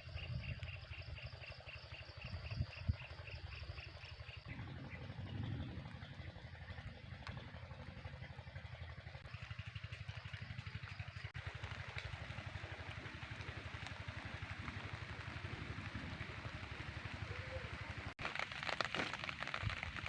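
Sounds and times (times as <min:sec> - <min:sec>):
fast low pulsing: 0:03.3 - 0:18.2
steady rain falling: 0:11.3 - 0:20.0.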